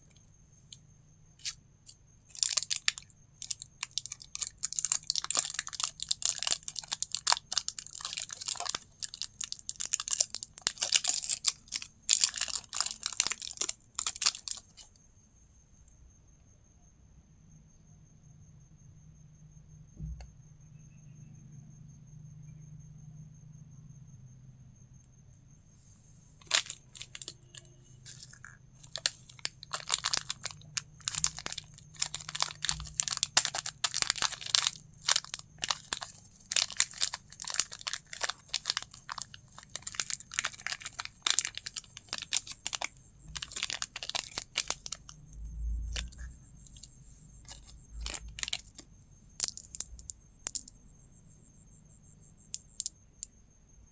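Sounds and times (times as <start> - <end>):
candy packaging crinkling: 1.4 - 14.9, 26.4 - 50.7.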